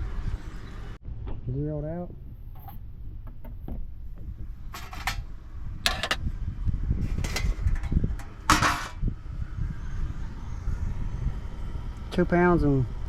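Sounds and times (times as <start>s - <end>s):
scrap aluminum clattering onto scale: 4.7s - 5.2s, 5.9s - 6.2s, 7.2s - 9.0s.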